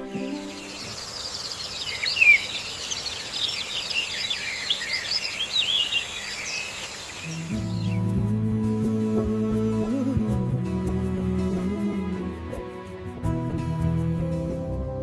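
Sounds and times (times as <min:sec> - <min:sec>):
small birds chirping: 0:00.0 - 0:08.2.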